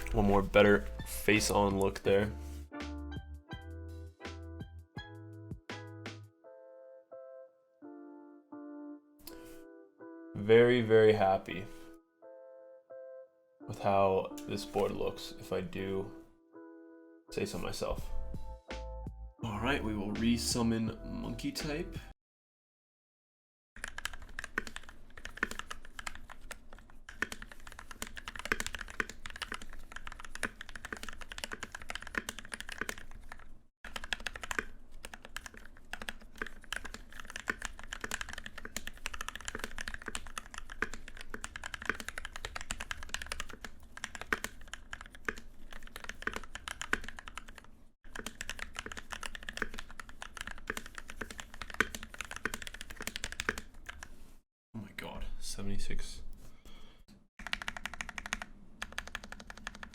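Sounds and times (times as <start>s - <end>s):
fast mechanical keyboard typing: 23.8s - 54.1s, 57.4s - 59.9s.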